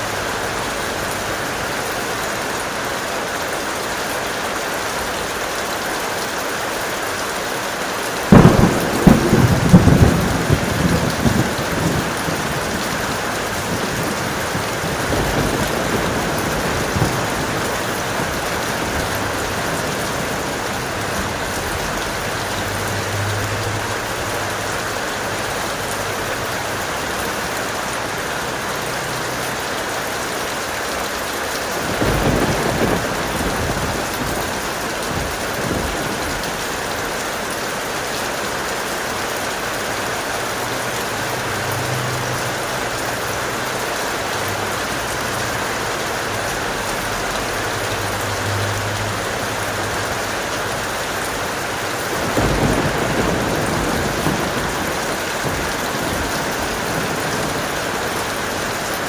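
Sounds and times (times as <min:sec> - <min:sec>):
heavy rain: 0:00.0 - 0:59.0
low rumble of thunder: 0:08.3 - 0:24.3, 0:31.8 - 0:37.3, 0:52.0 - 0:59.0.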